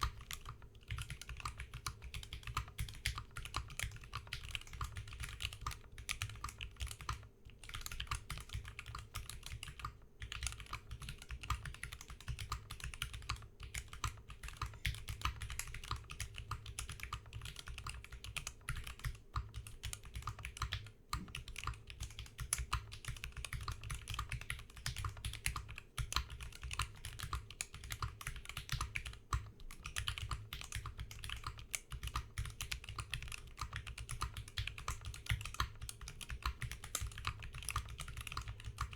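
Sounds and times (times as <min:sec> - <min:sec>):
mechanical keyboard keystroke clacks: 0:00.0 - 0:38.9.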